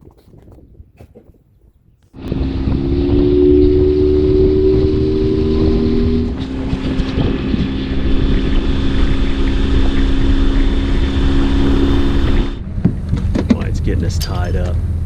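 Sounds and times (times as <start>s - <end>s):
wind on microphone: 0.0s - 15.0s
boat motor running: 2.2s - 15.0s.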